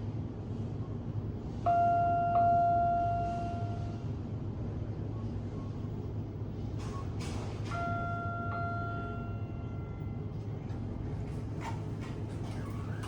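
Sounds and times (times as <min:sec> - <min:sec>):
elevator arrival chime: 0:01.7 - 0:04.0, 0:07.7 - 0:10.5.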